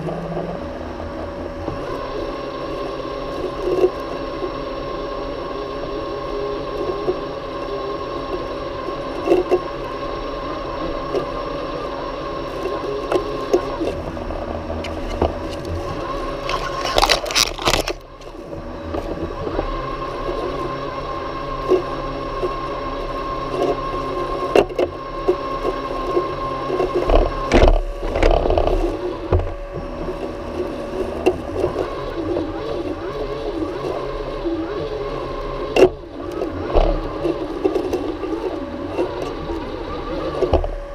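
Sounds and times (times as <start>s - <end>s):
robotic lawn mower humming: 0.0s - 40.9s
clicks knocks and scrapes: 14.8s - 19.7s.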